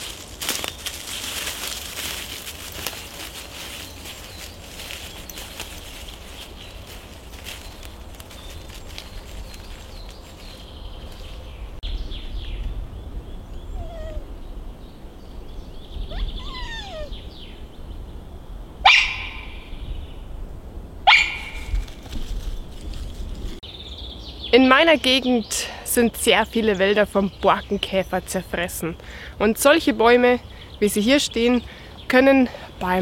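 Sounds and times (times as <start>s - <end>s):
bird calls: 15.6s - 17.8s
animal barking: 18.8s - 19.6s, 21.1s - 21.6s.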